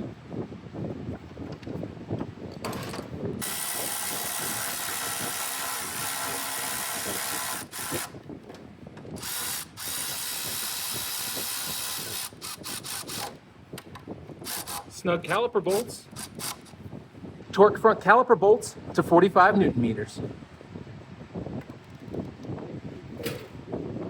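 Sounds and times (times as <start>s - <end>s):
ratchet wrench spinning bolts: 3.4s - 8.2s, 9.2s - 13.4s, 14.5s - 14.9s.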